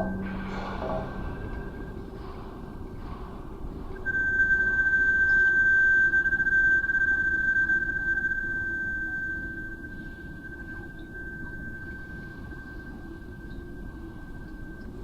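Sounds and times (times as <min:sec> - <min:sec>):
steady high tone: 0:00.0 - 0:02.1, 0:04.0 - 0:14.8
low rumble: 0:00.0 - 0:04.2.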